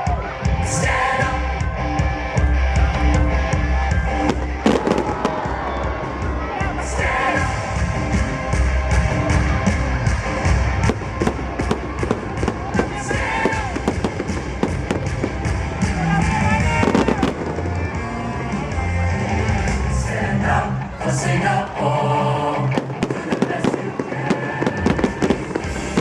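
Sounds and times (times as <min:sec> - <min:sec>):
patriotic song music: 0:00.0 - 0:26.0
fireworks banging and crackling: 0:04.1 - 0:06.0, 0:07.4 - 0:18.7, 0:22.6 - 0:26.0.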